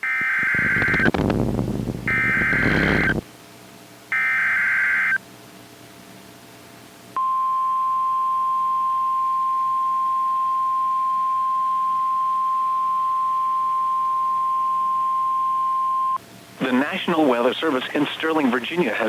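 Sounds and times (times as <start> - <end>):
steady loud alarm beep: 0.0 - 1.1, 2.0 - 3.2.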